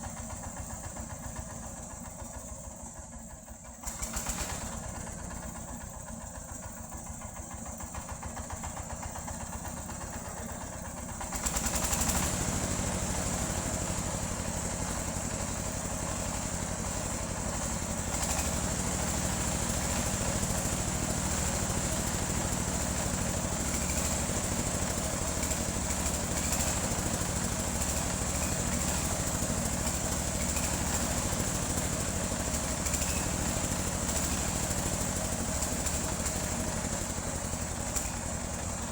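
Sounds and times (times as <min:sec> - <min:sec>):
engine-driven sawmill running: 0:00.0 - 0:38.9.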